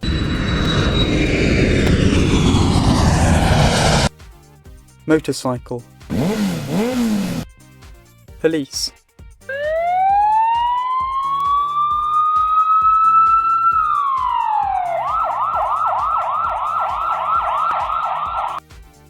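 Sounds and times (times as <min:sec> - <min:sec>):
police siren wail and yelp: 0:09.5 - 0:18.6.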